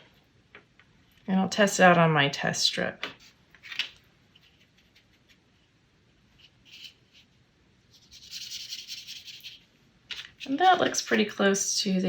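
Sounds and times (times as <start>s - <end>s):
paintbrush scratching on paper: 6.3s - 9.7s.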